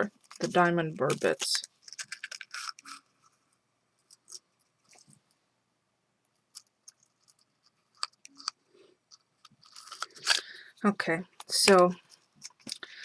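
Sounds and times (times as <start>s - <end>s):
plastic packaging crinkles: 9.5s - 10.6s.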